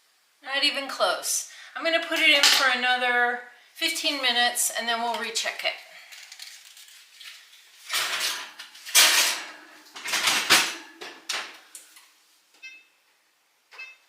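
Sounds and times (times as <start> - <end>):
baking pan clattering and scraping: 7.9 - 11.5.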